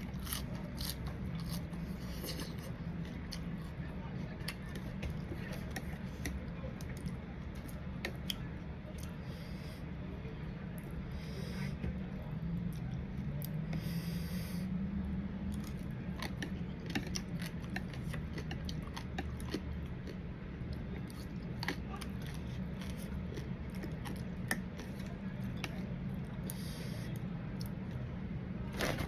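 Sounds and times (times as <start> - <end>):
chewing food: 0.0 - 9.5, 15.4 - 28.1, 28.7 - 29.0
steady low hum: 0.0 - 29.0
small clicks and crunches: 28.7 - 29.0.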